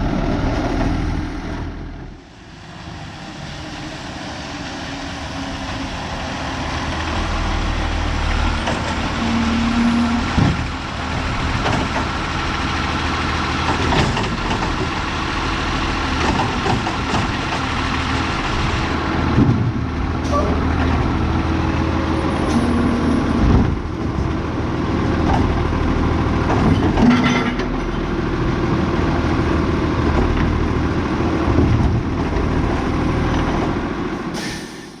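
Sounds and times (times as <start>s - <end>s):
garbage truck engine drone: 0.0s - 35.0s
metal clanks and knocks: 10.3s - 10.7s, 13.6s - 14.9s, 26.4s - 28.1s.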